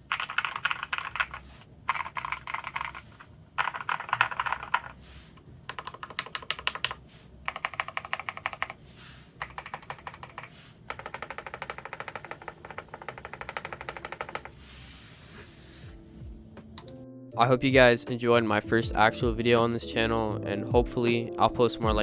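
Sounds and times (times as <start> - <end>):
fast typing on mechanical keyboard: 0.0 - 5.0, 5.6 - 8.8, 9.4 - 14.5.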